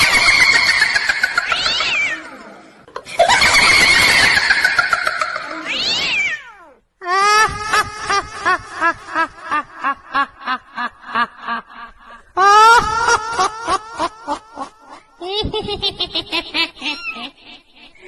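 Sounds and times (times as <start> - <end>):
cat yowling: 1.4 - 2.4, 5.6 - 6.8
snickering laugh: 7.4 - 18.0.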